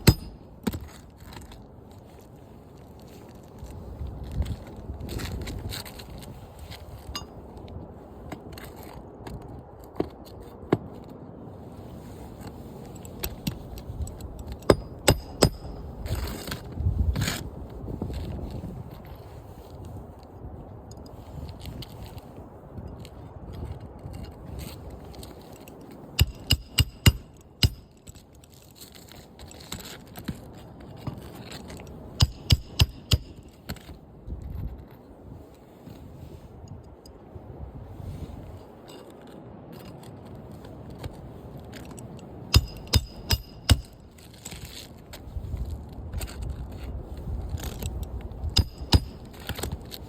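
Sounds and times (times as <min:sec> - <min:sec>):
hammer striking nails: 0:00.0 - 0:00.8, 0:14.7 - 0:15.8, 0:26.2 - 0:27.9, 0:32.2 - 0:33.5, 0:42.6 - 0:44.0, 0:48.6 - 0:49.3.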